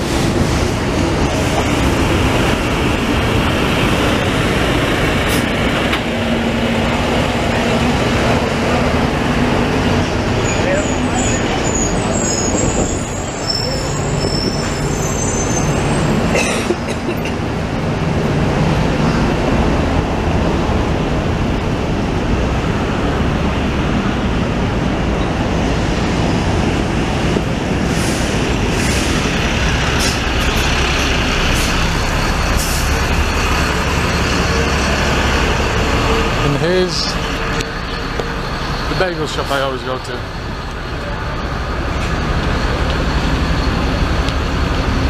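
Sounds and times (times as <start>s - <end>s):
heavy vehicle rumble: 0.0s - 45.0s
sharp high squeaks: 10.4s - 16.2s.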